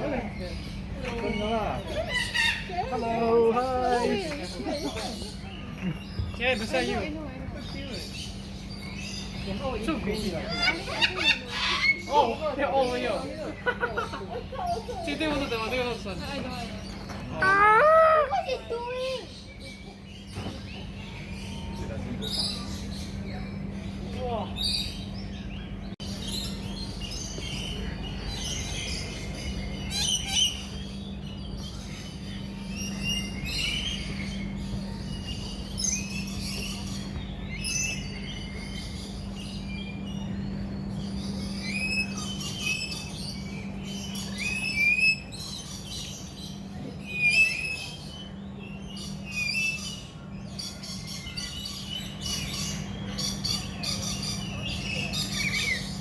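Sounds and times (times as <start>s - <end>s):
birds chirping and calling: 0.0s - 56.0s.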